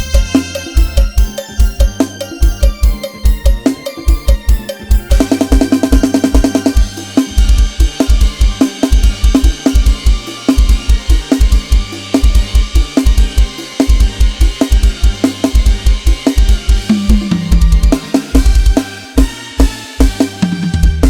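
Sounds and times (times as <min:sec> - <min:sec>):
bass line: 0:00.0 - 0:21.0
fast drum kit groove: 0:00.0 - 0:21.0.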